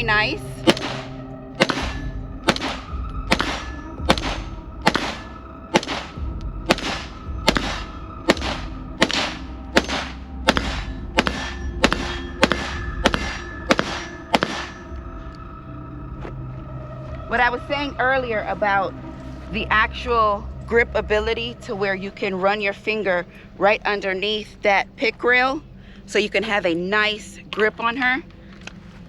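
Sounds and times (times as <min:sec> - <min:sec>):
rifle shots: 0:00.6 - 0:14.9.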